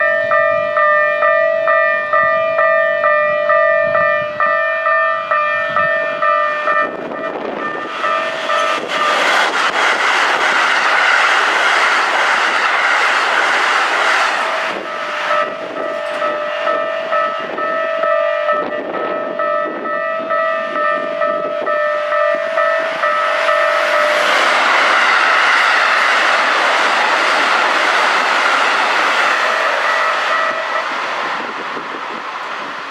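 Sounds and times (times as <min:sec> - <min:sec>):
level crossing alarm ringing: 0:00.0 - 0:09.2, 0:14.8 - 0:24.2, 0:29.4 - 0:31.0
electric train passing: 0:00.0 - 0:32.9.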